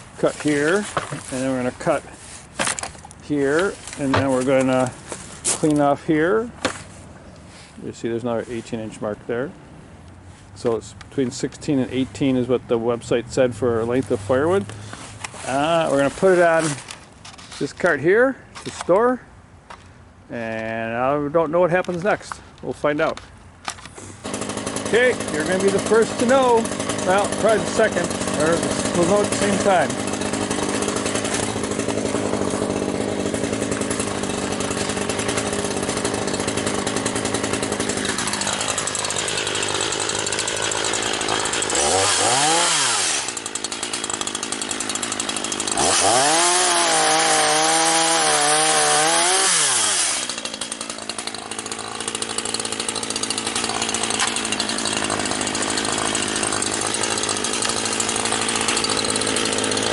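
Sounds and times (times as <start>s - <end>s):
chainsaw idling and revving: 0.0s - 6.5s, 13.8s - 17.0s, 24.2s - 59.9s.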